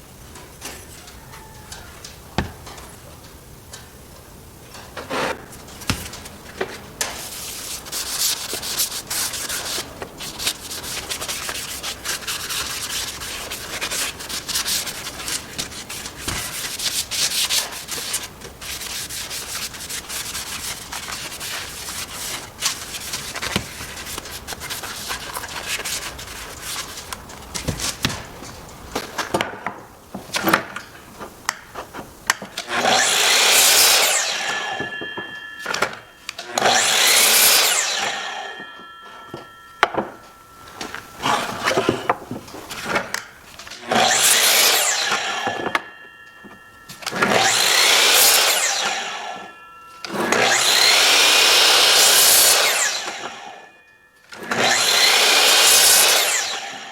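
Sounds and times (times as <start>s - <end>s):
small knocks: 0.4s - 3.9s
wood sanded by hand: 7.1s - 27.1s, 36.7s - 38.3s, 40.8s - 43.0s, 47.1s - 49.5s
power tool cutting wood: 32.5s - 56.9s.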